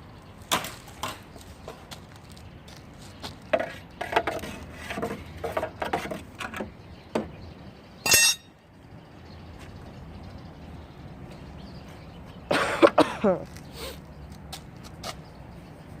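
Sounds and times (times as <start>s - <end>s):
tools and metal parts clinking: 8.0s - 8.5s.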